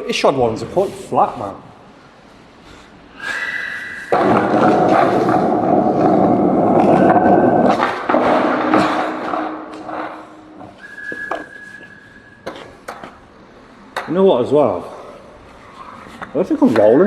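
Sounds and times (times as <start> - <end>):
skateboard clacks: 4.1 - 11.5
skateboard wheels rolling on pavement: 4.1 - 11.7.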